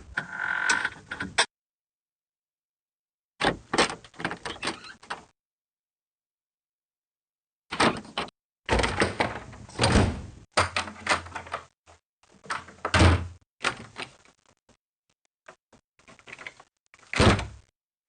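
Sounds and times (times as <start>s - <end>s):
doors closing and slamming: 7.7s - 11.7s, 12.5s - 14.0s, 17.1s - 17.7s.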